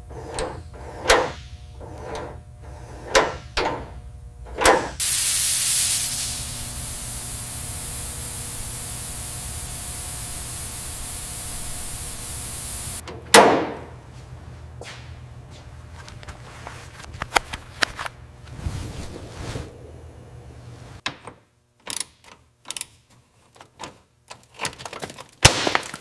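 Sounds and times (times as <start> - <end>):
hiss of spraying air: 5.0 - 13.0.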